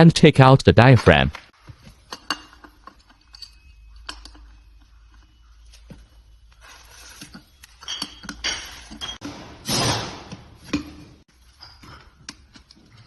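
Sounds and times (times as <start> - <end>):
metal parts clinking and knocking: 1.8 - 5.8, 7.1 - 9.2.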